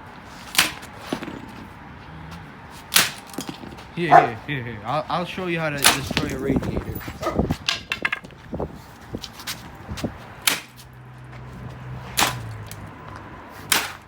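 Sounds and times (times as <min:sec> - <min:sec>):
blows smashing metal radiator: 0:13.6 - 0:14.0.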